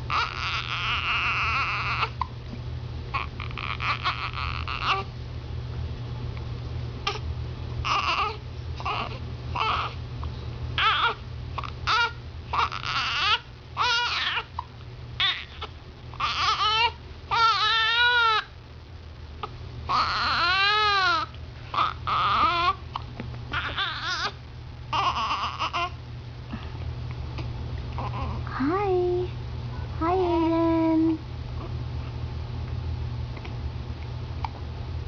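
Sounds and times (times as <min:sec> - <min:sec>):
baby crying: 0:00.1 - 0:02.2, 0:03.1 - 0:05.1, 0:07.8 - 0:10.0, 0:10.8 - 0:18.5, 0:19.4 - 0:22.9, 0:23.5 - 0:26.0, 0:28.0 - 0:28.4.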